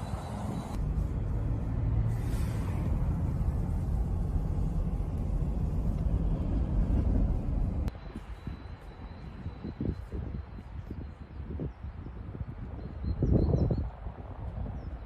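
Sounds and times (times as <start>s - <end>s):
low rumble: 0.0s - 9.6s.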